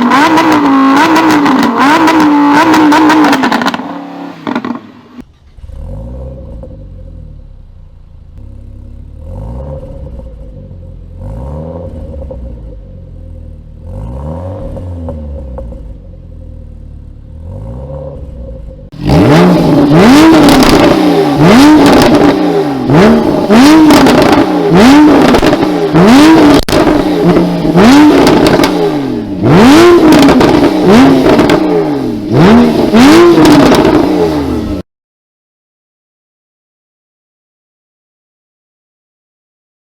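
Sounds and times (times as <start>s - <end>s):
exhaust crackling and popping: 0.0s - 5.8s, 18.2s - 34.8s
car engine revving: 0.0s - 34.8s.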